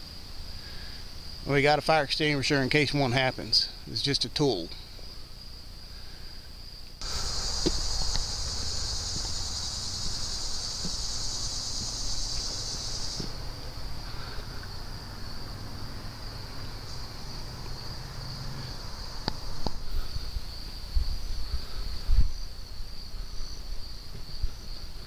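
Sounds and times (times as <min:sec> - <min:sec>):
cricket-like trill: 0:00.0 - 0:25.0
high insect buzz: 0:05.1 - 0:25.0.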